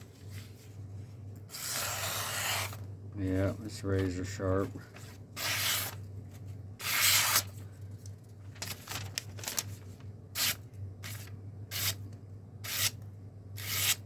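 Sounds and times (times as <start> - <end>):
knife edge scraping: 12.7 - 13.0, 13.6 - 14.0.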